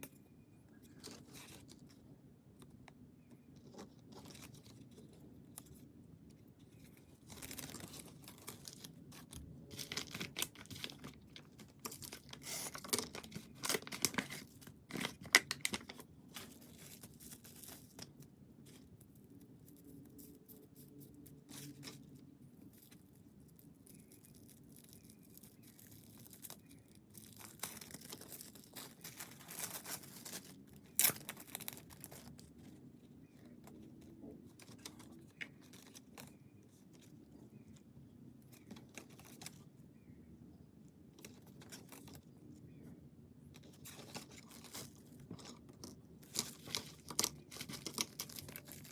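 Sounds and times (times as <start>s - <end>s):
packaging torn and crinkled: 7.1s - 18.2s, 21.2s - 32.8s, 43.6s - 48.9s.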